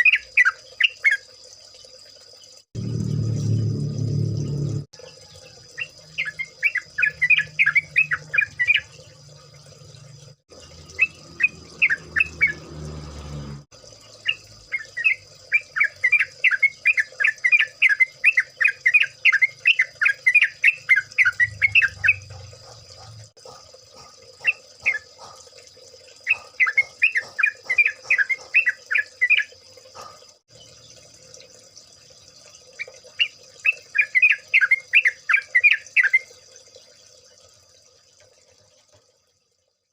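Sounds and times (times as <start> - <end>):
low hum: 2.8 - 4.9
birds calling rapid notes: 10.9 - 12.7, 14.3 - 22.4, 26.3 - 29.5.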